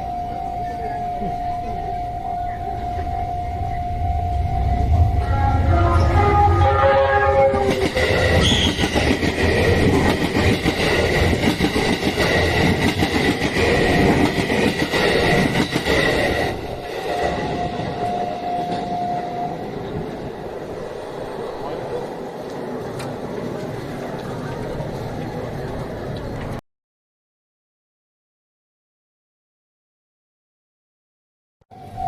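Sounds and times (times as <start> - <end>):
steady high ring: 0.0 - 8.9, 16.0 - 20.3
train wheels rumbling and clattering: 2.7 - 26.6.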